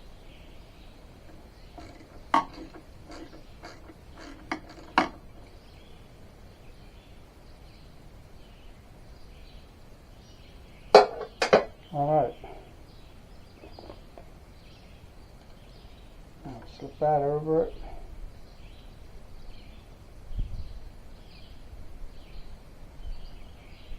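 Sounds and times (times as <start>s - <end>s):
faint steady background: 0.0s - 23.9s
metal tools clinking: 1.3s - 5.6s.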